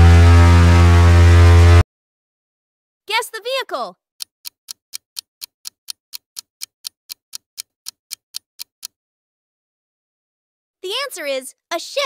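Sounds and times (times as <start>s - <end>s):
clock-style ticking: 4.2s - 9.0s.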